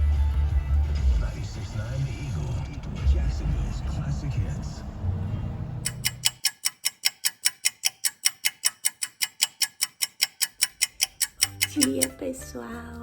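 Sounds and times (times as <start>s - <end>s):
rapid even ticking: 5.8s - 12.2s.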